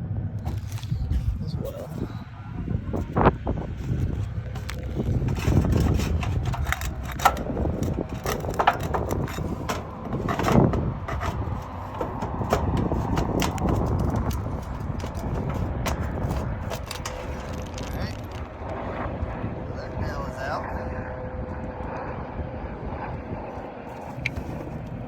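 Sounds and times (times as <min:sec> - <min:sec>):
hand tool prying nail loose: 0:03.9 - 0:18.4.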